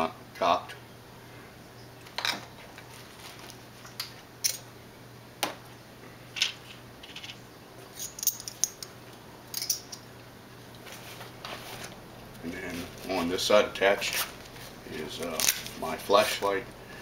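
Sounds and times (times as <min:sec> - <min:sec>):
light metallic clinks: 0:09.5 - 0:10.1.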